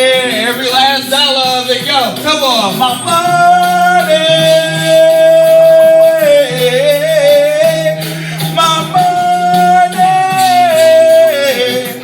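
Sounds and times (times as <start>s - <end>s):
hip-hop song: 0.0s - 12.0s
sung vocal hook: 2.7s - 12.0s.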